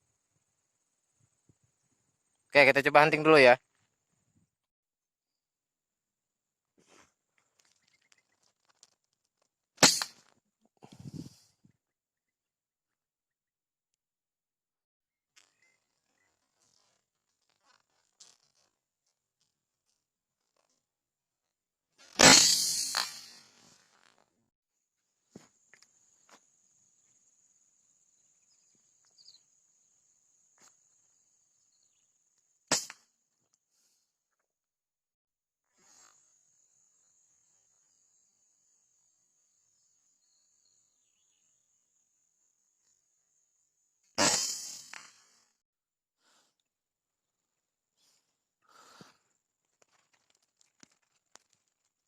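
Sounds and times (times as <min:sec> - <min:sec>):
air rifle shot: 0:09.8 - 0:10.1
loud sharp crack: 0:09.8 - 0:10.2, 0:22.2 - 0:23.4, 0:32.7 - 0:33.0, 0:44.2 - 0:45.1
crickets chirping: 0:25.2 - 0:32.7, 0:35.8 - 0:44.9.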